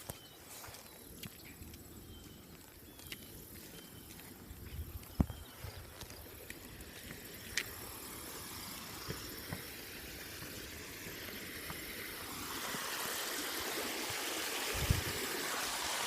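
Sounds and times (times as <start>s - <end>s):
creek water rushing: 5.6s - 16.0s.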